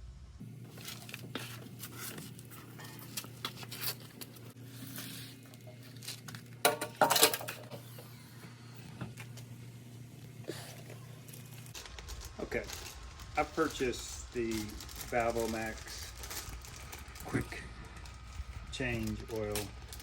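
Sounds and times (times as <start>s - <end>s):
steady low hum: 0.0s - 20.0s
metal parts clicking and clinking: 6.0s - 7.8s.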